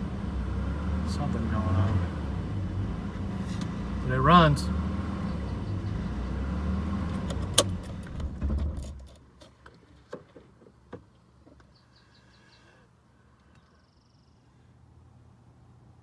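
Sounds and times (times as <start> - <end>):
car engine idling: 0.0 - 9.0.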